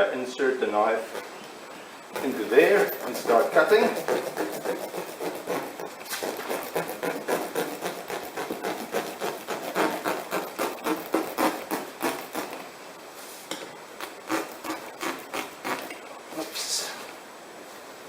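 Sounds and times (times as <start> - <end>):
knife rasping strokes: 1.0 - 1.5, 2.1 - 12.7, 14.0 - 16.6.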